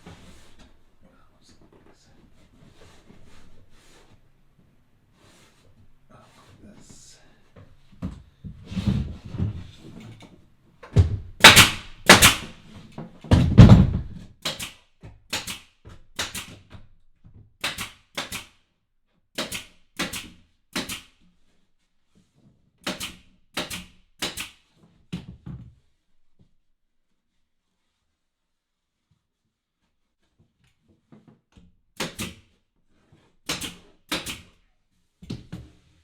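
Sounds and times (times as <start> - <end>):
sharp knocks and thuds: 13.2 - 14.3.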